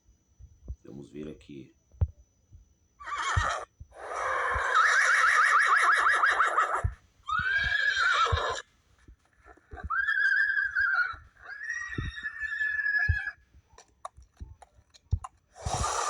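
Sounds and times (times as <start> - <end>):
horse whinnying: 3.0 - 8.7, 9.8 - 13.4.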